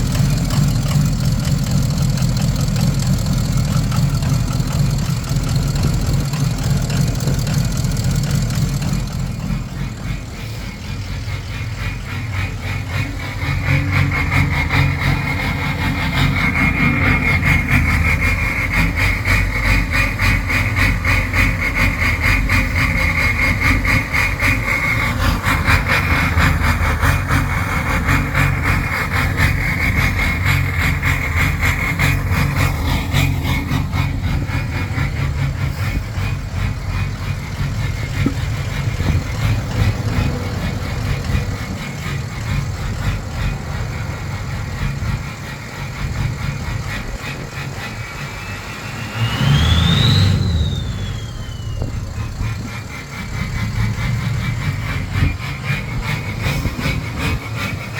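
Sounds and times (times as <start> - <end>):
diesel engine idling roughly: 0.0 - 57.9
high whine: 8.5 - 57.9.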